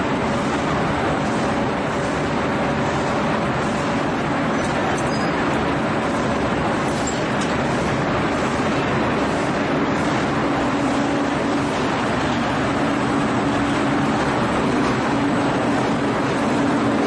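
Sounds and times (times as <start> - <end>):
loud rushing noise: 7.6 - 17.0.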